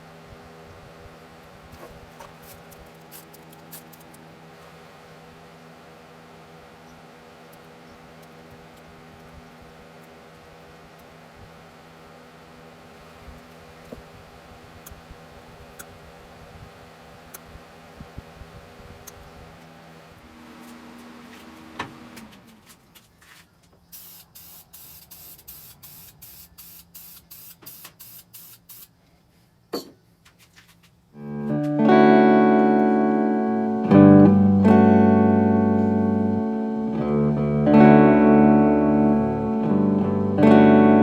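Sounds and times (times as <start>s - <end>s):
loud guitar music: 31.2s - 41.0s.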